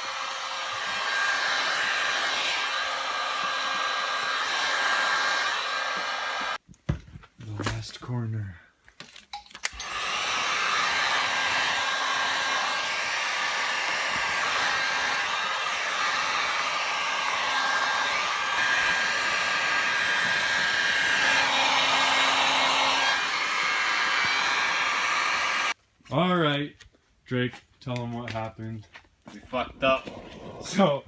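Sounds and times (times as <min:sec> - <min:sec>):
heat gun blowing: 0:00.0 - 0:06.6, 0:09.7 - 0:25.8.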